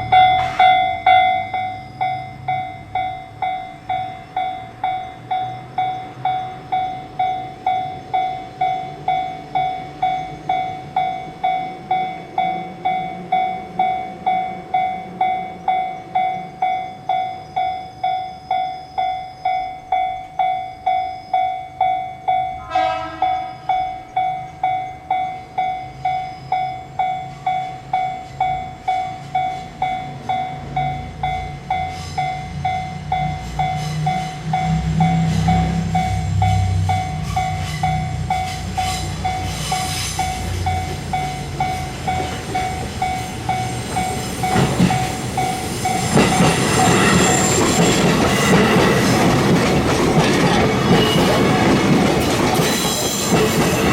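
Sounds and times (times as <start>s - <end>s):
level crossing warning bell: 0.0s - 53.9s
train rumble and wheel clicks: 0.0s - 53.9s
train horn blast: 0.2s - 1.3s, 22.5s - 23.8s.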